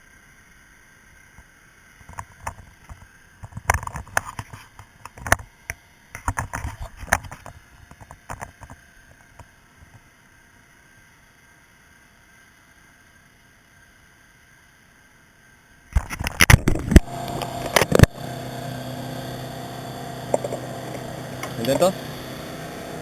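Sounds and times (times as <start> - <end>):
faint steady hum: 0.0 - 23.0
hard objects clicking and knocking: 20.3 - 21.6.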